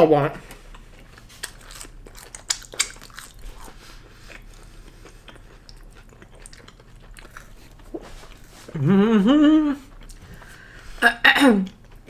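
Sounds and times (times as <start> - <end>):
chewing and biting: 0.4 - 8.8
wet mouth clicks: 1.2 - 3.6.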